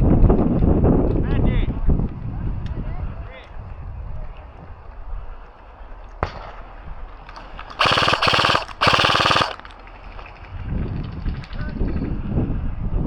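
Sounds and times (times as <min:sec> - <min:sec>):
airsoft gun bursts: 0:07.8 - 0:09.7.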